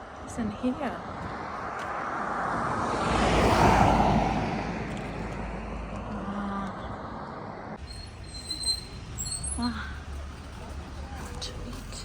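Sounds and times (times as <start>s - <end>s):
car passing by: 0.2s - 7.8s.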